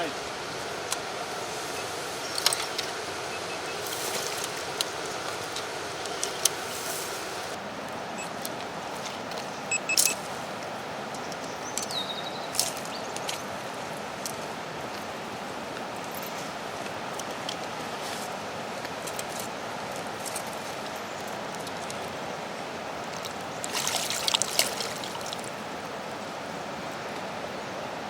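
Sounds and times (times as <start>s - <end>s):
river water rushing: 0.2s - 8.1s, 22.6s - 27.5s.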